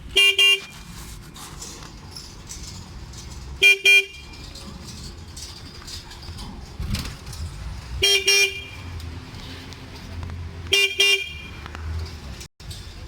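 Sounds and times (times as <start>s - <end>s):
vehicle horn toots: 0.1s - 0.8s, 3.6s - 4.3s, 8.0s - 9.0s, 10.7s - 11.6s.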